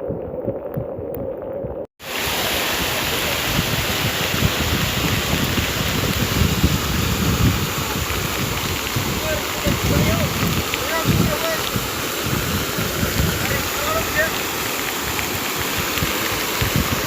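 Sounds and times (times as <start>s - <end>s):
wind buffeting microphone: 0.0s - 17.0s
floodwater rushing: 2.0s - 17.0s.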